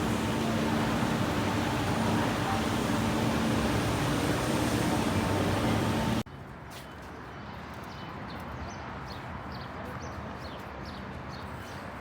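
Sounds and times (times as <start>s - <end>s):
vehicle rumble with low hum: 0.0s - 6.3s.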